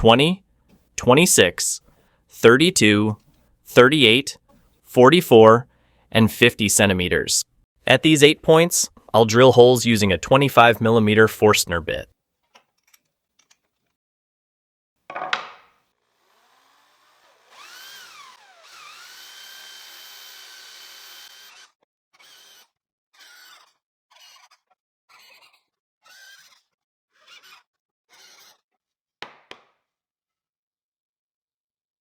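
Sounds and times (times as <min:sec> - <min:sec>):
power drill boring into wood: 0:15.9 - 0:24.4, 0:26.0 - 0:28.5.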